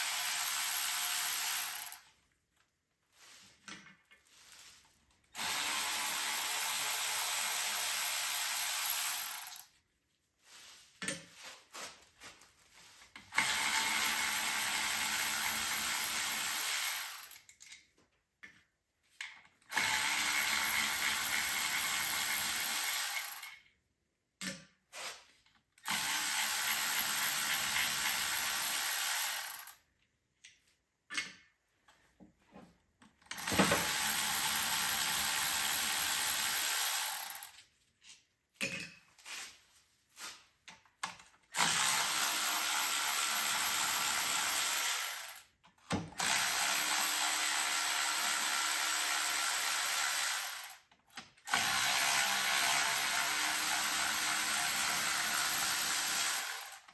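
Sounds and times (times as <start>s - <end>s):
handheld power tool running: 0.0s - 2.1s, 5.4s - 9.7s, 13.3s - 17.5s, 19.7s - 23.6s, 25.8s - 29.8s, 33.3s - 37.6s, 41.5s - 45.5s, 46.1s - 56.9s.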